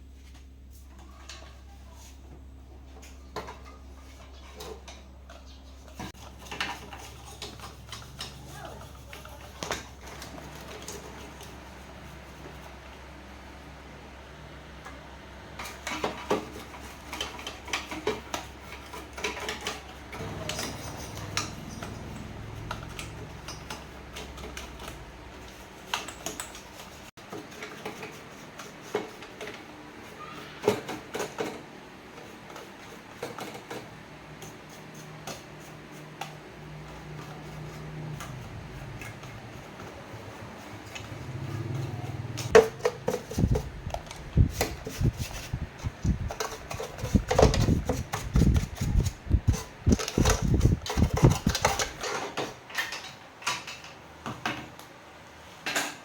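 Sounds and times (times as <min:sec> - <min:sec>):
tools clinking and clattering: 0:17.1 - 0:26.9.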